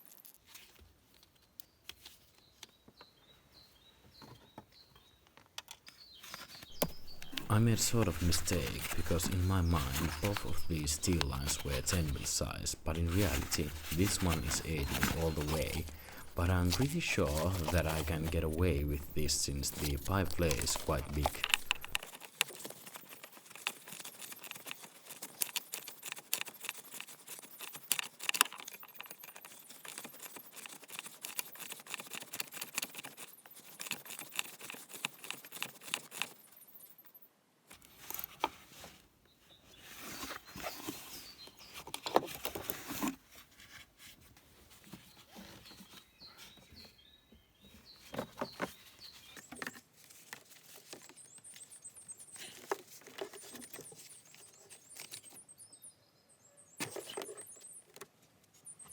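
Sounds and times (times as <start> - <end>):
hand tools clinking on metal: 6.7 - 36.4.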